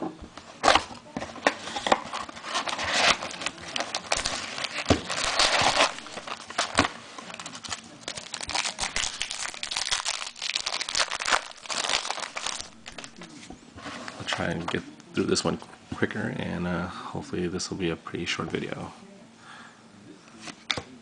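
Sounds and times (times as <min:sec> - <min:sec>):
wrapper crinkling and tearing: 0:02.1 - 0:13.3.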